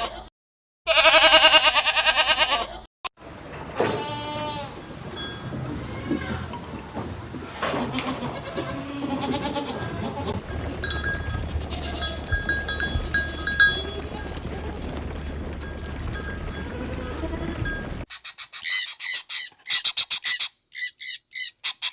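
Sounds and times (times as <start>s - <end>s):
farm animal bleating: 0.9s - 2.9s, 3.7s - 10.5s, 11.2s - 14.8s, 16.6s - 18.6s
short high-pitched calls: 18.1s - 21.9s.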